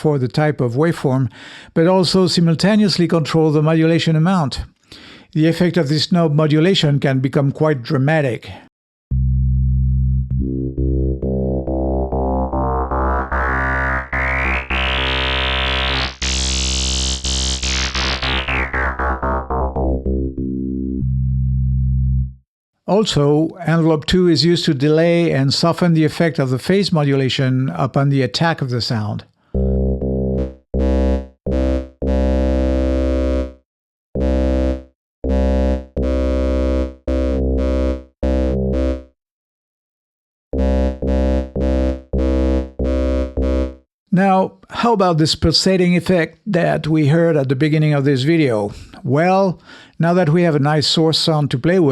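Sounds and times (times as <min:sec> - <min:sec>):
synthesized bass notes: 0:09.1 - 0:22.4, 0:29.6 - 0:33.6, 0:34.2 - 0:39.2, 0:40.6 - 0:43.8.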